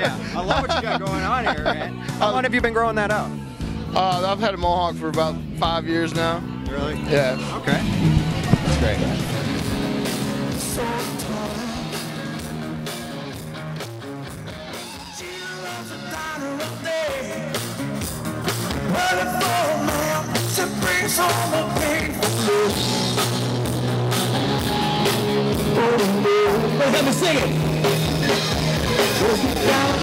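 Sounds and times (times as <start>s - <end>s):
live rock band playing: 0.0s - 30.0s
person singing: 6.9s - 12.4s, 15.0s - 17.6s, 18.9s - 23.0s, 25.6s - 27.6s, 28.9s - 30.0s.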